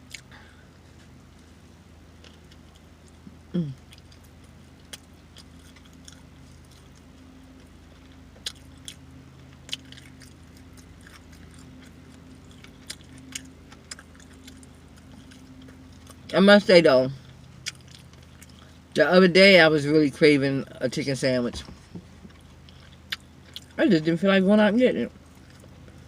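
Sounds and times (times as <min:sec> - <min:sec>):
lip-smacking and chewing: 0:02.2 - 0:16.3, 0:17.2 - 0:18.8, 0:22.2 - 0:23.8.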